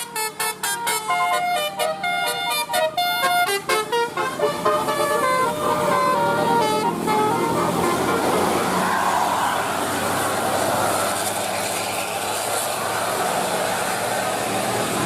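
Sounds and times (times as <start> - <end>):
multi-tone musical bus horn: 0.0 - 8.9
rushing noise: 2.8 - 15.0.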